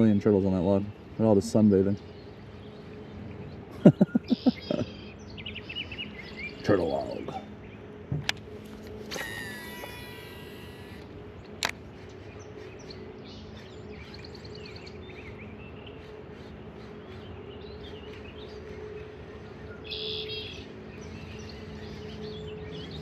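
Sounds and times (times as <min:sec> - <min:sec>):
small birds chirping: 0:00.0 - 0:23.0
steady low hum: 0:00.0 - 0:23.0.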